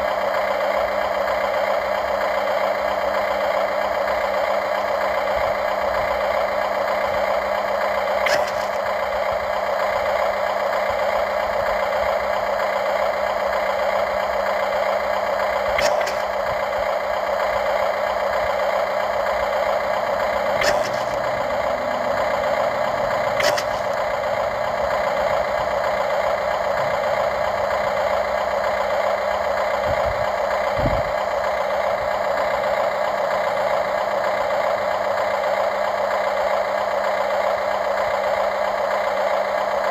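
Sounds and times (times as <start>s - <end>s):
model excavator motor whining: 0.0s - 39.9s.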